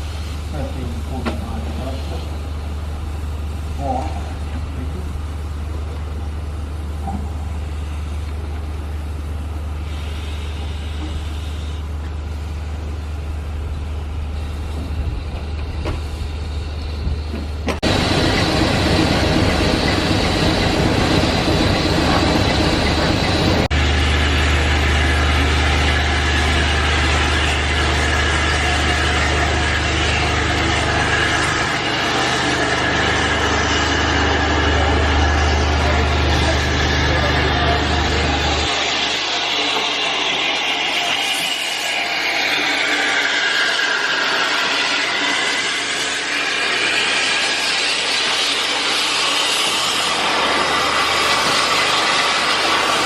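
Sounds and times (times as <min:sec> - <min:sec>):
locomotive running with low hum: 0:00.0 - 0:53.0.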